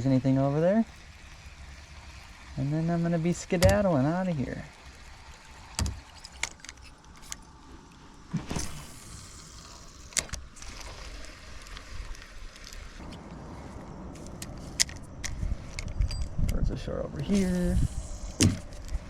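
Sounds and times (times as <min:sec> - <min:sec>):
low steady background noise: 0:00.0 - 0:19.0
fishing gear clicking and rattling: 0:05.7 - 0:07.6, 0:14.2 - 0:16.6, 0:17.3 - 0:19.0.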